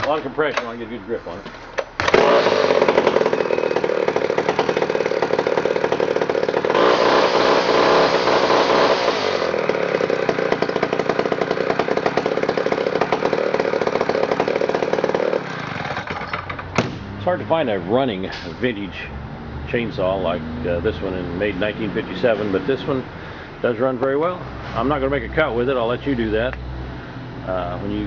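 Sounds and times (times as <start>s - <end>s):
chainsaw engine running: 2.0s - 16.7s.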